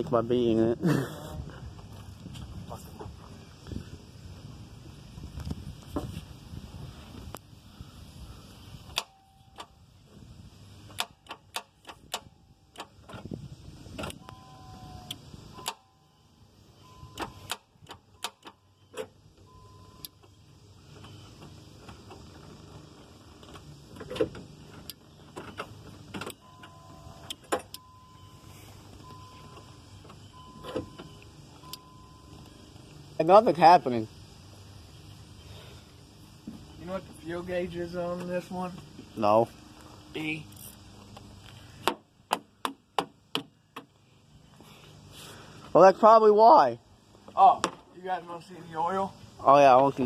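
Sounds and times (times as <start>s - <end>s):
car ignition clicks and knocks: 8.9s - 9.8s, 10.8s - 14.3s, 15.6s - 15.9s, 17.1s - 20.4s, 21.0s - 27.8s, 41.8s - 44.0s
short car beeps: 14.1s - 17.5s, 18.2s - 20.2s, 26.4s - 32.7s.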